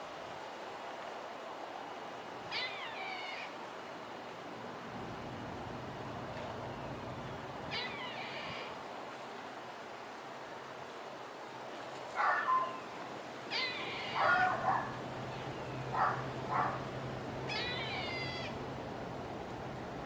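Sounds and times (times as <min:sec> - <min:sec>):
low steady hum: 0:11.7 - 0:20.0.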